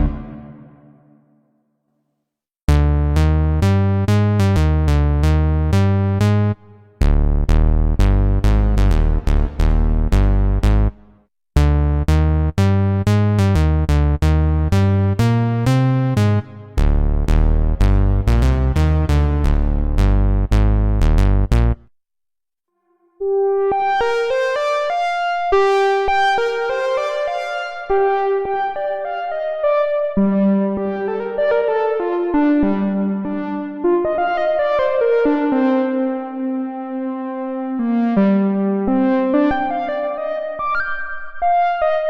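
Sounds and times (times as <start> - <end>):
synthesizer bass sequence: 0.0 - 1.2, 2.7 - 11.0, 11.6 - 21.8.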